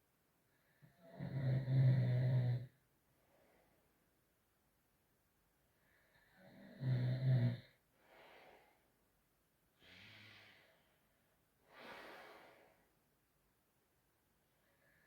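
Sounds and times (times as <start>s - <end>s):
person breathing heavily: 8.0s - 8.9s, 9.8s - 12.9s.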